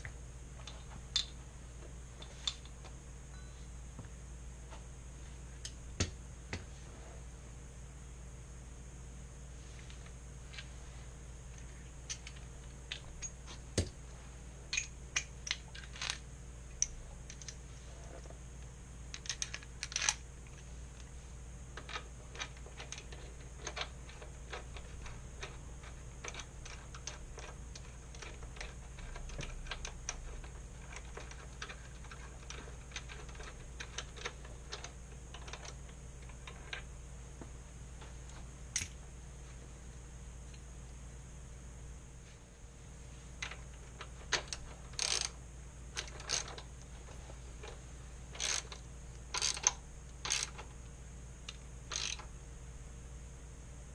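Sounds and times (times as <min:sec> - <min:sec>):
ratchet wrench clicking: 0:45.0 - 0:45.4, 0:48.4 - 0:50.6, 0:51.9 - 0:52.2.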